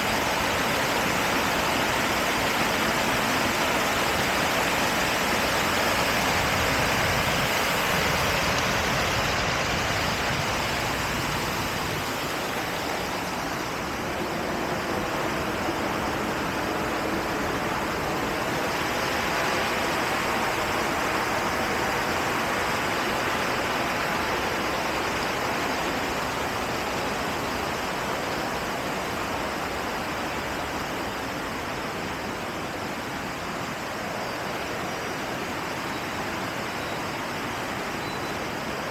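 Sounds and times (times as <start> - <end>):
river water rushing: 0.0 - 38.9.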